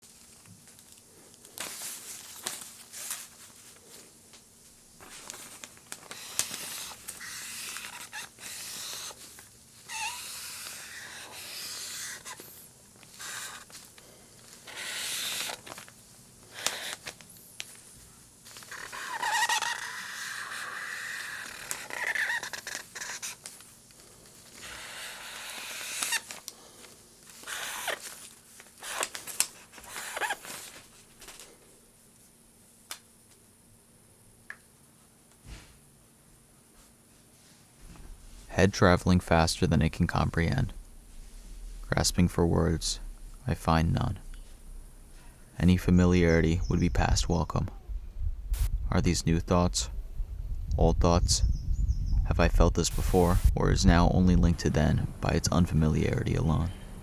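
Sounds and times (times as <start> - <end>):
hiss and crackle bursts: 48.5 - 48.7, 52.8 - 53.6.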